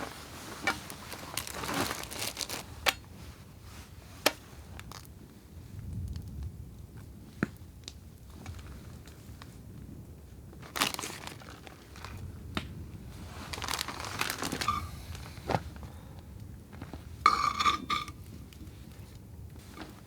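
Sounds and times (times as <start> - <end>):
crinkling: 0.0 - 5.1, 10.5 - 20.0.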